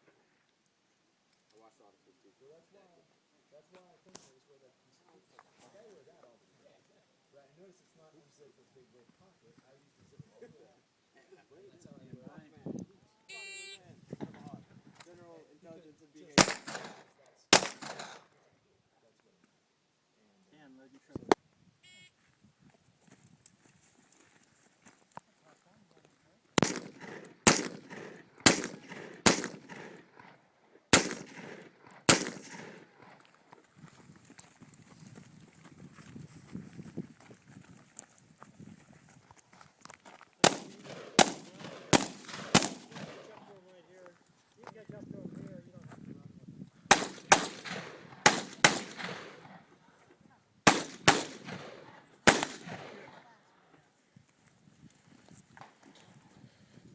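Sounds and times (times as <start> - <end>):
gunshots with echo: 16.4 - 18.3, 26.6 - 30.2, 30.9 - 33.0, 40.4 - 43.3, 46.9 - 49.6, 50.7 - 53.0.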